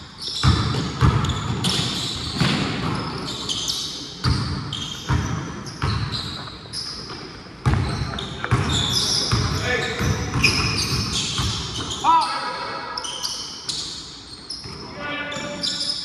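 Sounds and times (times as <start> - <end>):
basketball bouncing on gym floor: 0.4 - 3.6, 4.2 - 12.0.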